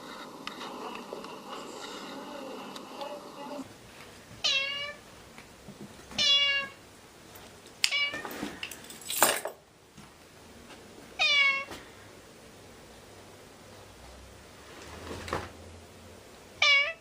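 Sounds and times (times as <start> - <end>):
cat meowing: 4.4 - 5.0, 6.2 - 6.8, 11.2 - 11.7, 16.6 - 17.0.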